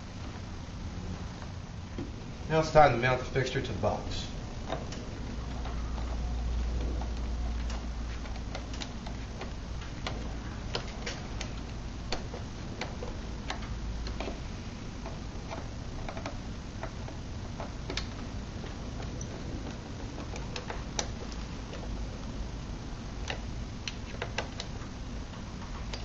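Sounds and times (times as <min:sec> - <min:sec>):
low background rumble: 0:00.0 - 0:26.0
small clicks and metallic taps: 0:04.6 - 0:14.4, 0:15.0 - 0:22.0, 0:23.2 - 0:26.0.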